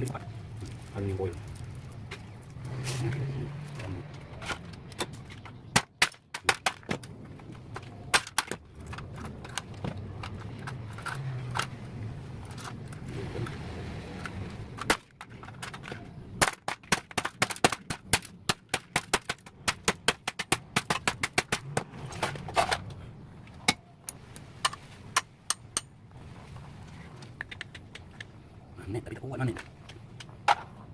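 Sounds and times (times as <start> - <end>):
hard parts clicking and clacking: 3.6 - 13.1, 14.2 - 25.9.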